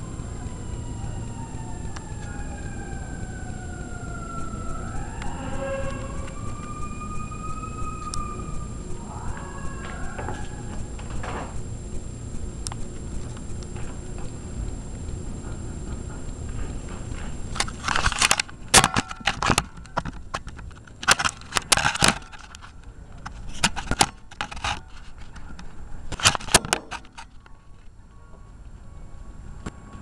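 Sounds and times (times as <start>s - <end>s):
low steady rumble: 0.0s - 18.7s.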